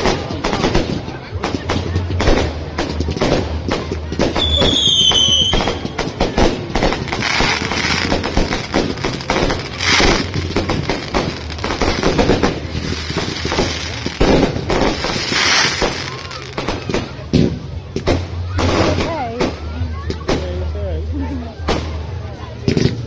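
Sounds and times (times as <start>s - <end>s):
fireworks banging and crackling: 0.0s - 23.0s
crackling hiss: 4.3s - 17.2s
firework whistle falling in pitch: 4.4s - 5.9s.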